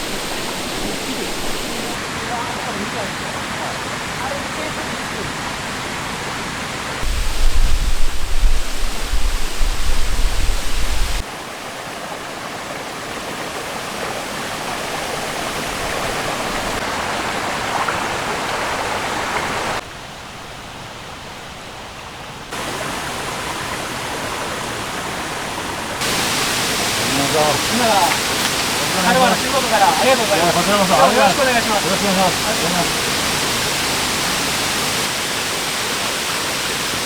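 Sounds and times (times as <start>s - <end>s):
stream rushing: 0.0s - 37.0s.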